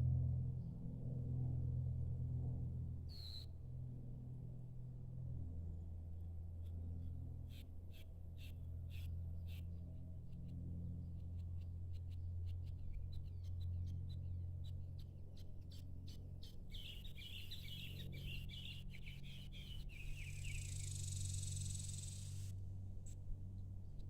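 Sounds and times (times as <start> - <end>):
low steady hum: 0.0 - 24.0
birds chirping: 12.0 - 22.5.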